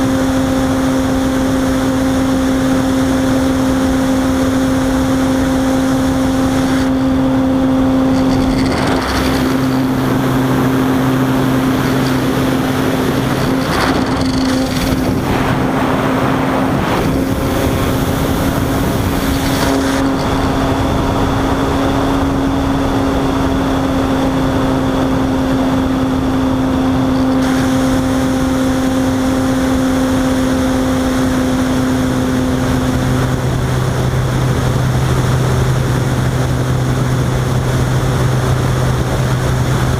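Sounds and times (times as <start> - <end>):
motor and propeller drone: 0.0 - 39.9
rushing air: 5.2 - 28.4.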